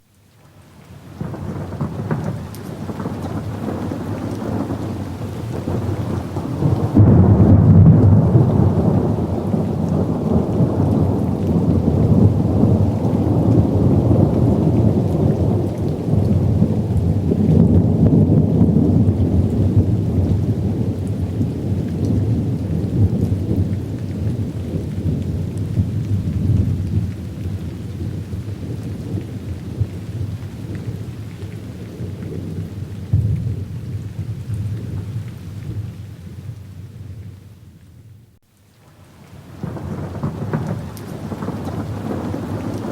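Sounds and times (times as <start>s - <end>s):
steady rain: 0.0s - 42.9s
rolling thunder: 1.2s - 37.3s, 39.5s - 42.9s.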